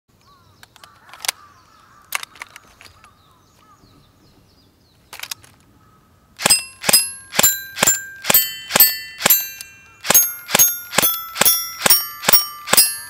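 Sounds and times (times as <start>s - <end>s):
birds chirping: 0.1s - 13.0s
sharp clicks: 0.2s - 1.4s, 2.0s - 3.2s, 5.1s - 5.7s, 6.4s - 13.0s
airsoft gun firing: 6.4s - 13.0s
glockenspiel bar ringing: 6.4s - 13.0s.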